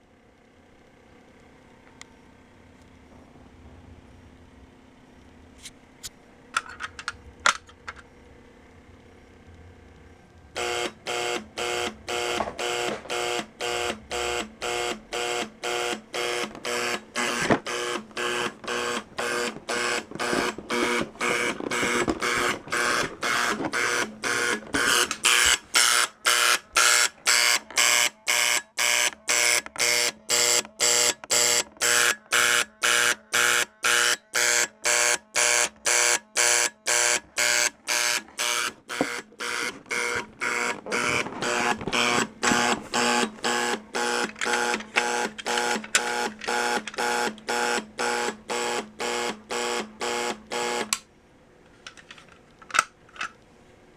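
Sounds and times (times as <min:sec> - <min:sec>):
fire alarm pulsing beeps: 0:10.6 - 0:51.0.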